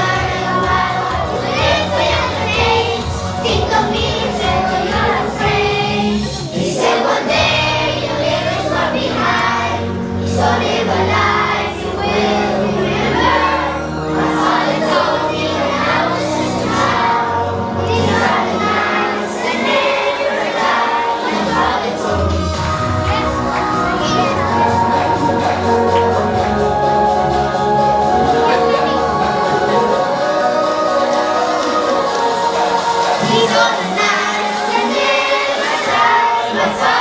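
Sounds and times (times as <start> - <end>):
bass line: 0.0 - 6.7, 21.4 - 34.2
children singing: 0.0 - 37.0
loud backing music: 0.0 - 37.0.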